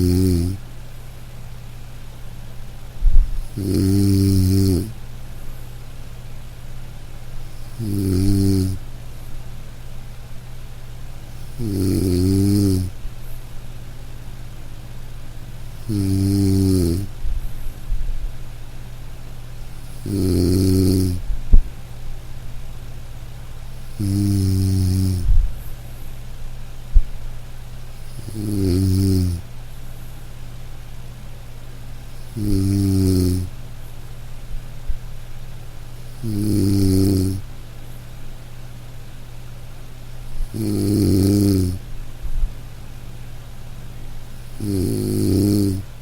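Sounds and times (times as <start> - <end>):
person snoring loudly: 0.0 - 0.6, 3.4 - 5.0, 7.5 - 8.8, 11.4 - 12.9, 15.8 - 17.1, 19.8 - 21.2, 23.8 - 25.3, 28.0 - 29.4, 32.2 - 33.5, 36.1 - 37.4, 40.3 - 41.8, 44.4 - 45.9
steady low hum: 0.0 - 46.0.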